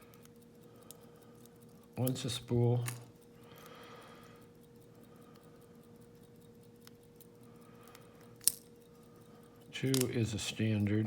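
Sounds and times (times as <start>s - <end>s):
light ticks: 0.0s - 11.0s
faint scraping of lock parts: 4.3s - 11.0s
sharp metallic click: 9.6s - 11.0s.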